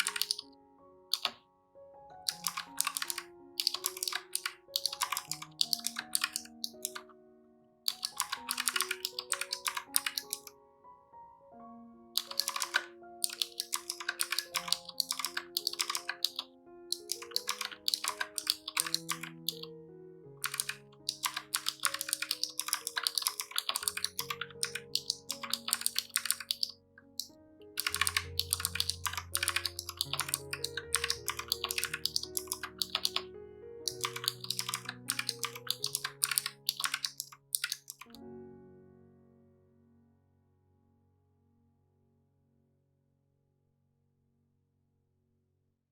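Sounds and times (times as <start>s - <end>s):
fast typing on mechanical keyboard: 0.0s - 0.4s, 1.1s - 1.4s, 2.3s - 7.0s, 7.9s - 10.5s, 12.2s - 19.7s, 20.4s - 33.3s, 33.9s - 38.2s.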